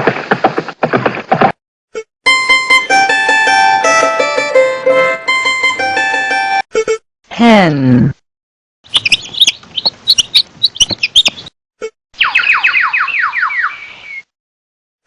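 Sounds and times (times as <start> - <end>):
chickens chirping: 8.9 - 11.5
chicks peeping: 8.9 - 11.5.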